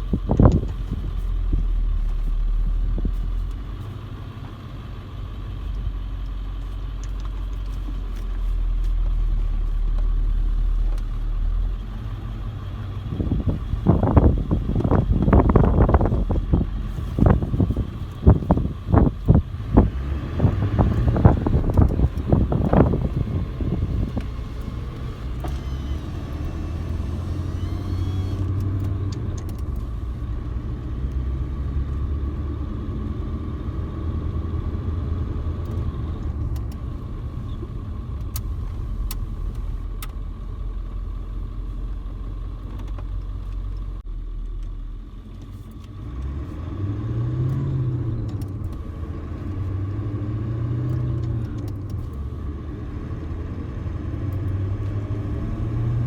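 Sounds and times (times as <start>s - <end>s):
diesel engine running: 0.0s - 56.0s
turbocharger whistle: 25.3s - 28.5s.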